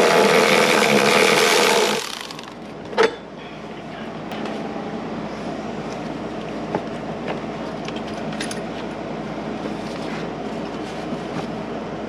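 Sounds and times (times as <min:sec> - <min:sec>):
cordless power tool motor: 0:00.0 - 0:02.6.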